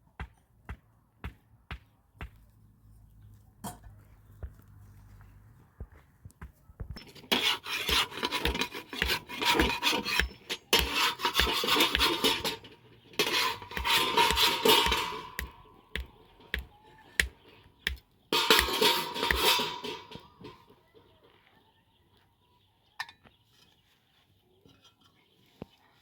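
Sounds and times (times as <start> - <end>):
rhythmic rasping and scraping: 7.0 - 20.6.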